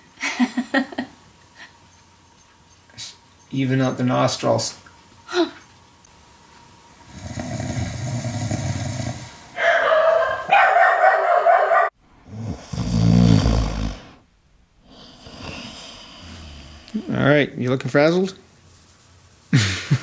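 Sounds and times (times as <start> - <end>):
man snoring loudly: 7.1 - 9.4, 12.2 - 14.2, 14.8 - 17.1.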